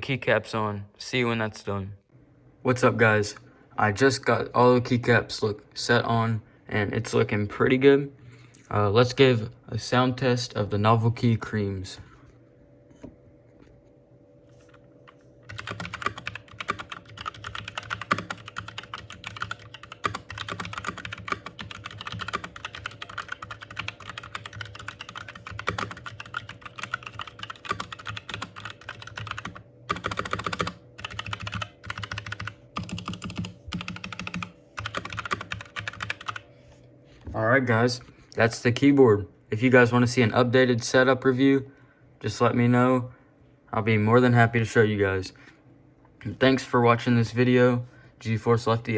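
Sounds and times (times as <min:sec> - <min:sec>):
mechanical keyboard typing: 0:15.5 - 0:36.4.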